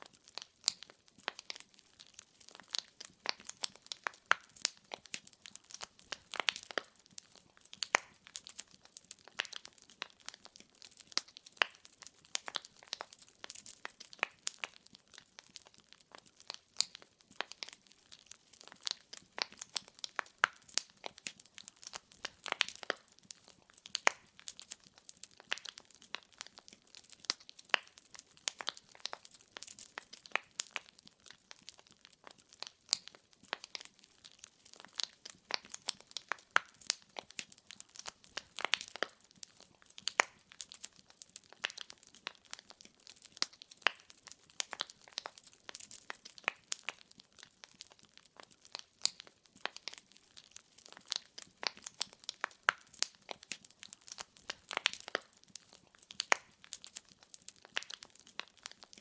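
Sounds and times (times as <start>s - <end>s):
logs crackling in a fireplace: 0.0s - 59.0s.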